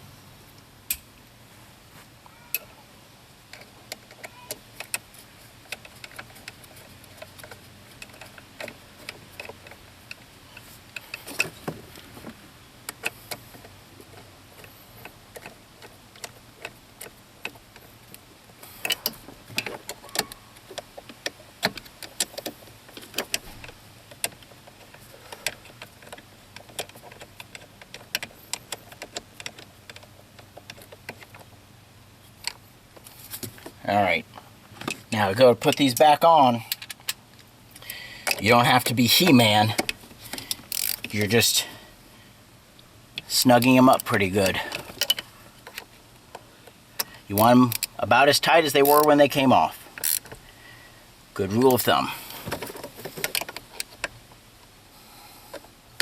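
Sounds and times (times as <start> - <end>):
ratchet wrench clicking: 39.6 - 41.6, 50.0 - 50.3.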